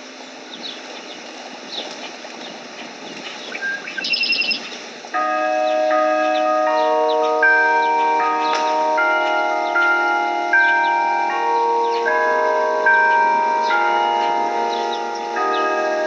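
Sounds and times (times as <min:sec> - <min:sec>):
birds chirping: 0:00.0 - 0:16.0
bells ringing a melody: 0:04.0 - 0:16.0.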